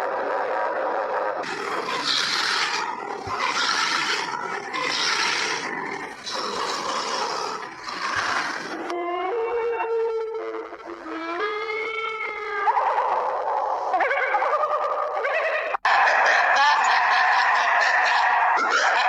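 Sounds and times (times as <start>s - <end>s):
harsh hissing roars: 1.4s - 8.8s.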